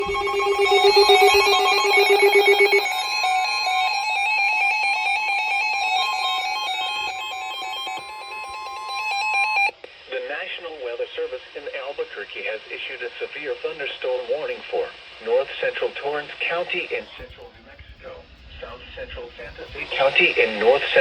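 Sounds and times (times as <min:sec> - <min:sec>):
chirping stepping tones: 0:00.0 - 0:02.9
steady electronic alert tone: 0:00.0 - 0:04.5
pulsing lower tone: 0:00.0 - 0:09.2.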